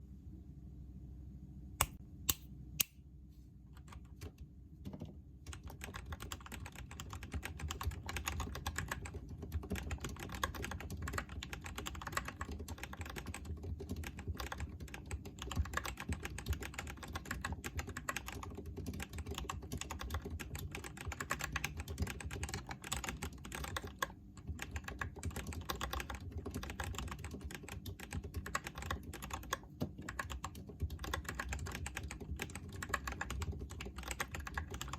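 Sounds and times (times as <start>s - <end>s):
mechanical keyboard typing: 3.8s - 34.9s.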